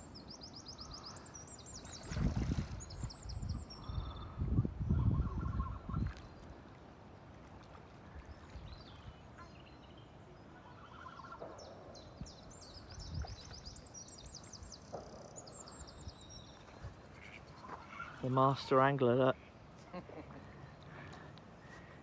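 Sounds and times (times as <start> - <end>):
wind rumble on microphone: 2.0 - 6.5, 12.2 - 14.3.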